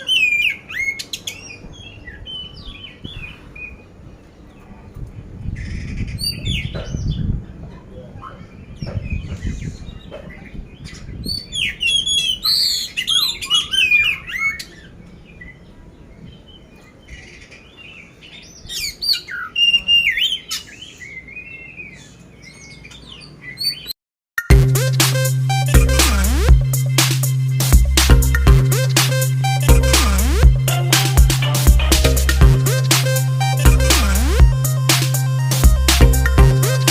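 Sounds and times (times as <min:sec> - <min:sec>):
bird singing: 0:08.2 - 0:23.9
low rumble: 0:24.5 - 0:34.9.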